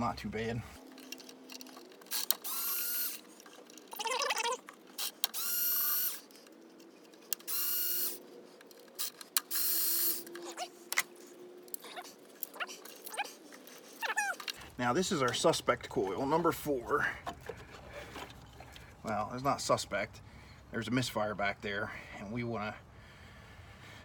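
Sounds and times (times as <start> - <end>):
cordless driver whining: 1.0 - 6.4, 7.1 - 13.2.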